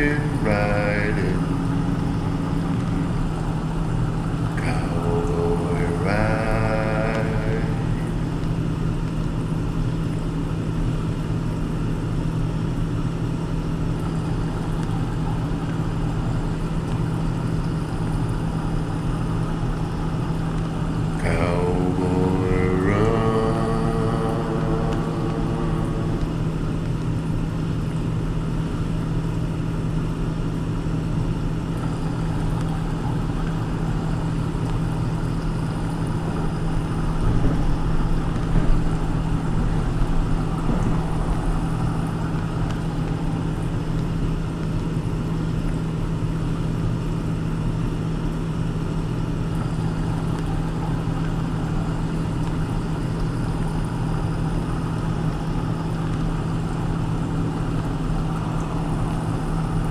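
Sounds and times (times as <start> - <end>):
car road and engine noise: 0.0 - 5.7, 31.8 - 44.3.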